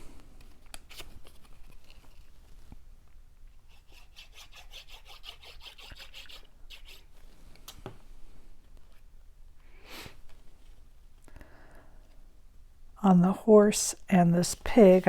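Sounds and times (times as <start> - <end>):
rapid rubbing on cardstock: 3.7 - 7.1.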